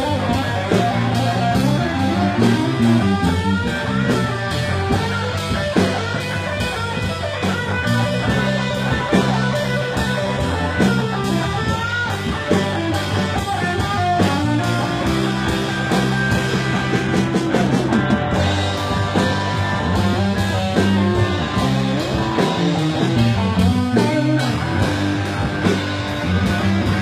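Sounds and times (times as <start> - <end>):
bass guitar notes: 0.0 - 27.0
drum kit: 0.0 - 27.0
electric guitar lines: 0.0 - 27.0.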